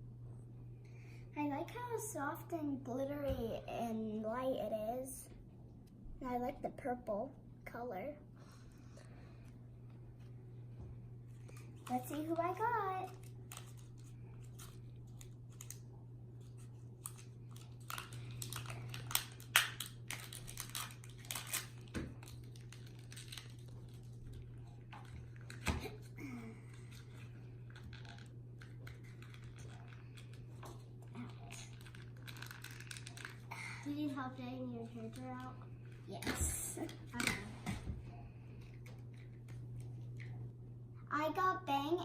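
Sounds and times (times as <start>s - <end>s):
low hum: 0.0s - 41.1s
hands crinkling plastic package: 11.5s - 15.8s, 16.4s - 26.0s, 26.7s - 33.8s.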